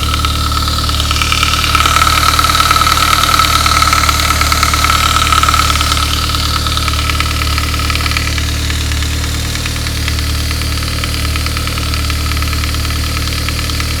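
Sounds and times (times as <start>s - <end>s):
car engine idling: 0.0s - 14.0s
fast clattering rattle: 0.0s - 14.0s.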